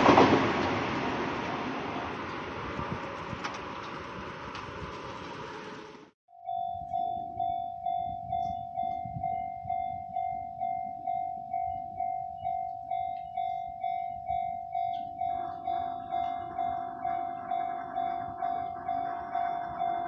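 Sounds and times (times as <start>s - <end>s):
level-crossing alarm bell ringing: 6.3s - 20.0s
low rumble: 14.3s - 20.0s.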